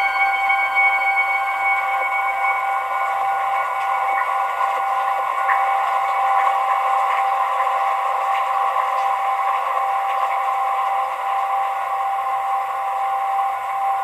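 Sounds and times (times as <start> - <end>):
bells ringing: 0.0 - 5.9.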